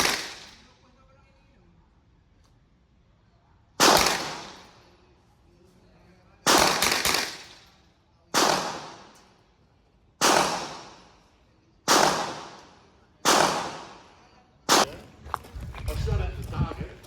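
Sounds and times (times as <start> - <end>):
gunshots echoing: 0.0 - 0.6, 3.8 - 4.7, 6.4 - 7.6, 8.4 - 9.2, 10.2 - 11.1, 11.9 - 14.1, 14.7 - 15.0.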